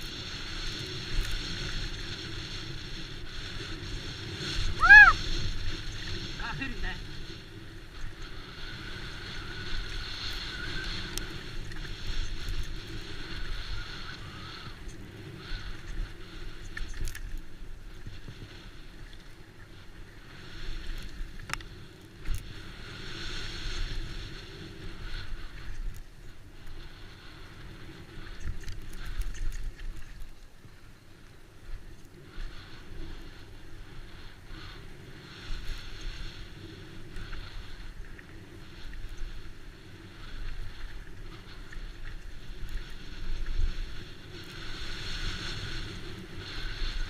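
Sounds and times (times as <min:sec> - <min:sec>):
wind buffeting microphone: 0:00.0 - 0:30.4
bike clicks and rattles: 0:28.2 - 0:30.6.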